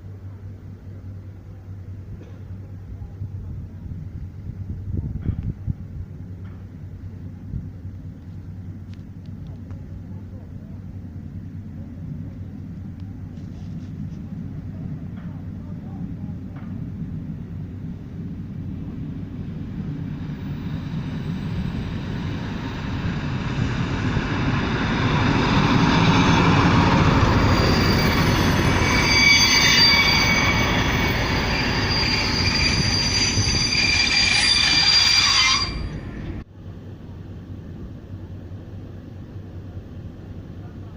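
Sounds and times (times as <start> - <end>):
train rumbling: 0.0 - 40.9
metallic wheel squeal: 25.7 - 36.4.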